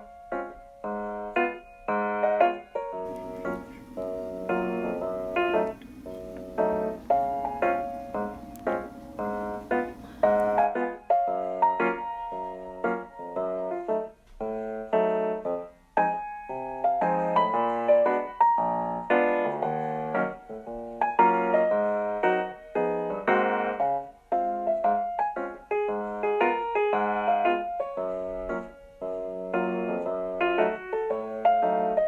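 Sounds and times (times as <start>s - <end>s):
piano chords: 3.1s - 10.6s.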